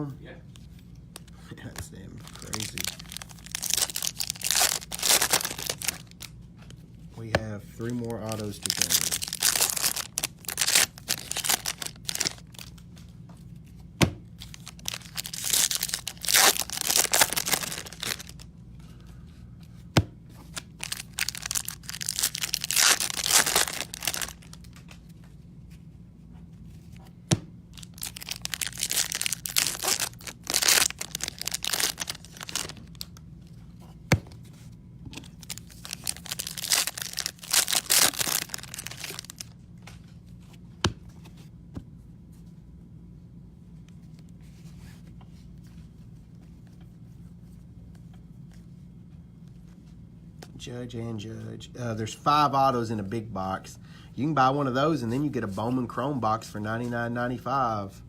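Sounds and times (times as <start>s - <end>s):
steady low hum: 0.0s - 58.0s
foil wrappers tearing and crinkling: 2.2s - 6.3s, 8.1s - 12.8s, 14.4s - 18.4s, 20.5s - 24.8s, 27.8s - 33.2s, 35.2s - 39.6s.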